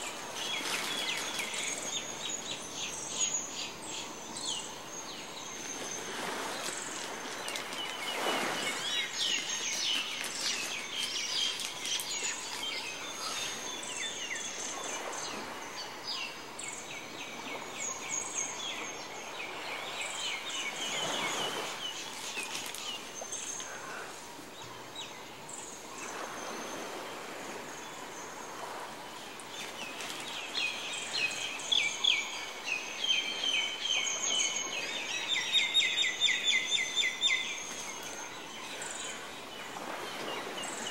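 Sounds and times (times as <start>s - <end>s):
small birds chirping and trilling: 0.0s - 26.2s.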